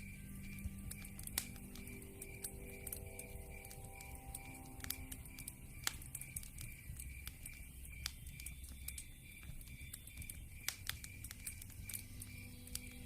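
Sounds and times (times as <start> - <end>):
wood fire crackling: 0.0 - 13.0.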